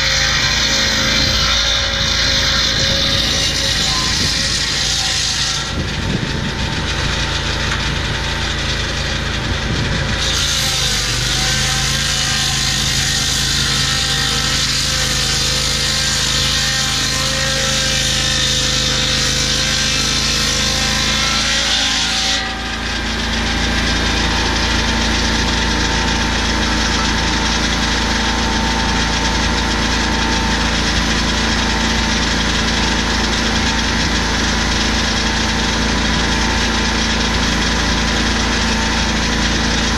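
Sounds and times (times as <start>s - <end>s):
petrol engine running: 0.0s - 10.3s, 22.8s - 39.9s
circular saw blade cutting log: 0.0s - 39.9s.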